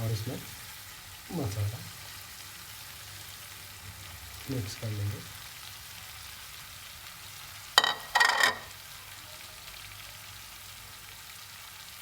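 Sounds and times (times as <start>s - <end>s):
food sizzling in a pan: 0.0s - 12.0s
spoon scraping a pan: 7.8s - 8.8s.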